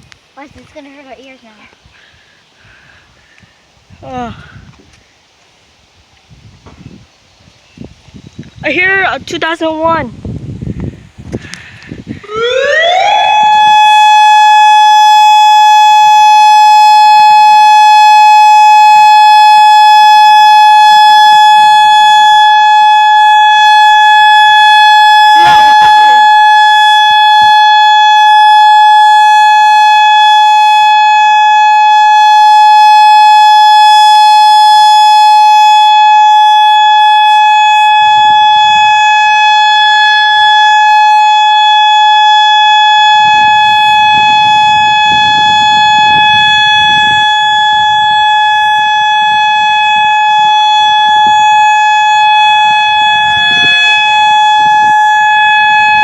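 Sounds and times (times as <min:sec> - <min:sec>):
warning siren steady tone: 0:12.0 - 0:56.0.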